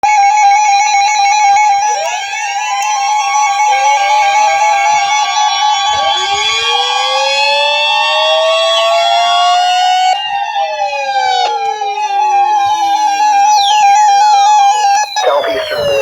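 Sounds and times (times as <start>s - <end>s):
rising siren wails: 0.0s - 16.0s
warbling buzzy alert tone: 15.2s - 16.0s.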